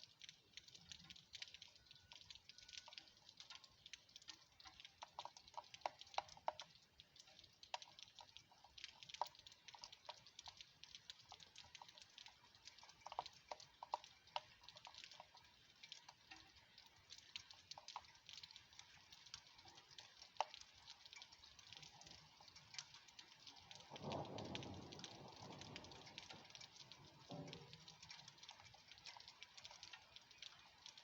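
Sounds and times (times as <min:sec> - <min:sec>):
raindrops pattering: 0:00.0 - 0:31.0.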